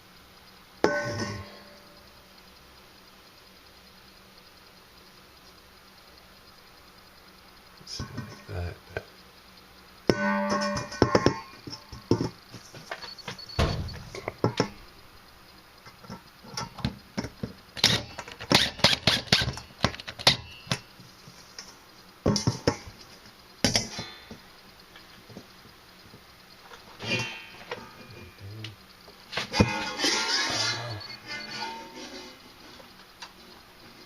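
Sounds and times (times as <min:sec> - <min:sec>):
clicks and knocks: 0:10.6 - 0:14.8.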